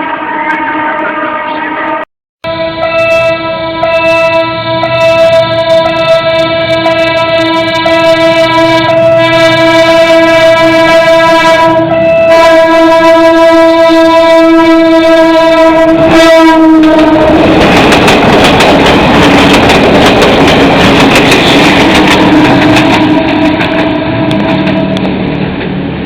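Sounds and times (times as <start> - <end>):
train horn blast: 0.0 - 25.2
train rushing past: 0.0 - 26.0
train wheels clattering: 17.2 - 25.9.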